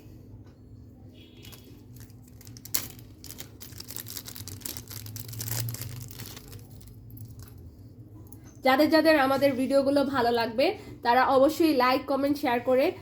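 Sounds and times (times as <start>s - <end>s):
packaging bag crinkling: 1.4s - 7.5s.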